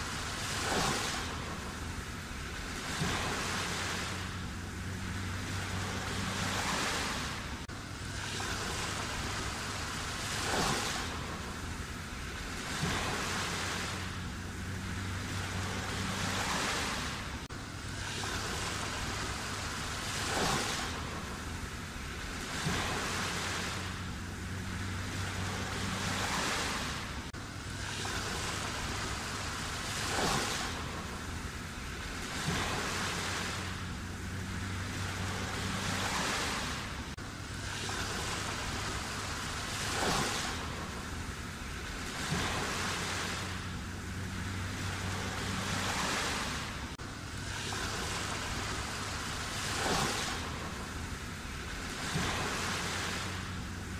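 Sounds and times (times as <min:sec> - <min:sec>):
sea waves breaking: 0:00.0 - 0:53.9.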